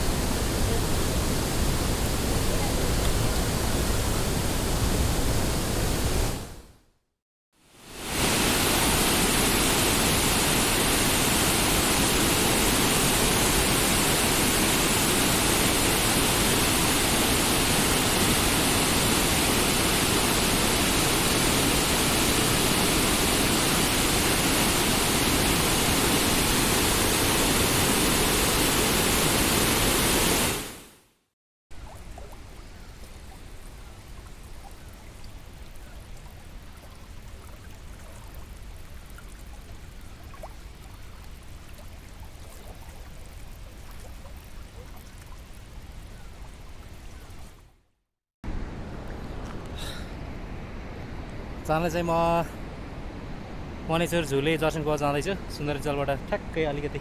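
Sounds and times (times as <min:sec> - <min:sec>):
quiet running water: 0:00.0 - 0:06.6, 0:07.6 - 0:31.0, 0:31.7 - 0:47.9, 0:48.5 - 0:57.0
fast-flowing river rushing: 0:07.9 - 0:30.8.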